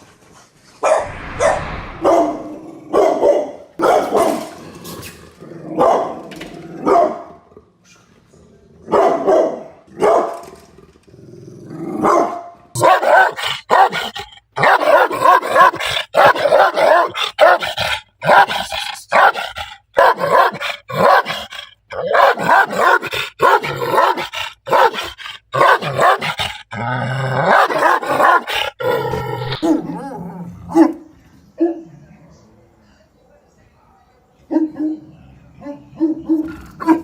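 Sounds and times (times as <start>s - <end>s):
dog barking: 3.0s - 4.4s, 5.8s - 6.2s, 6.8s - 7.3s, 8.9s - 10.4s, 12.0s - 26.7s, 27.3s - 30.0s, 30.7s - 31.9s, 34.4s - 37.0s
dog growling: 12.8s - 30.8s.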